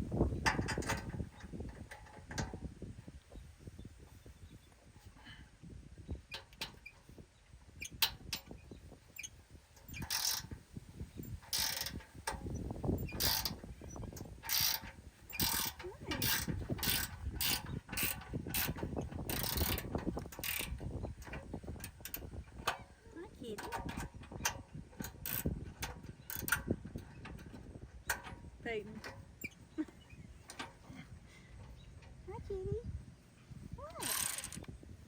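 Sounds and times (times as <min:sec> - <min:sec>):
ratchet wrench clicking: 0:09.9 - 0:10.5, 0:11.4 - 0:12.0, 0:13.0 - 0:13.6, 0:14.4 - 0:20.7, 0:34.0 - 0:34.7.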